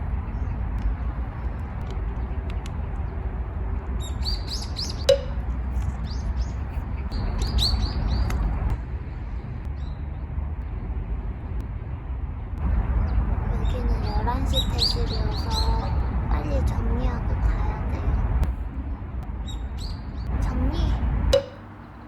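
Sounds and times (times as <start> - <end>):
low rumble of traffic: 0.0 - 22.0
small birds chirping: 4.0 - 8.4, 13.1 - 16.2, 19.4 - 22.0.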